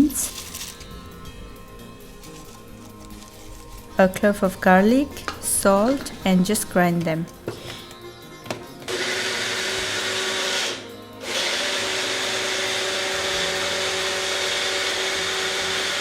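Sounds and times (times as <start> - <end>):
electric grinder whining: 7.0 - 16.0.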